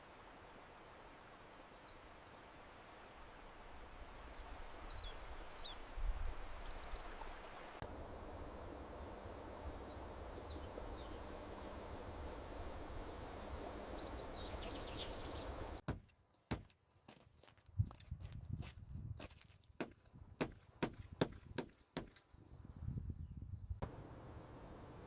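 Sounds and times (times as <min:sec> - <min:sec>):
steady background hiss: 0:00.0 - 0:15.8, 0:23.8 - 0:25.0.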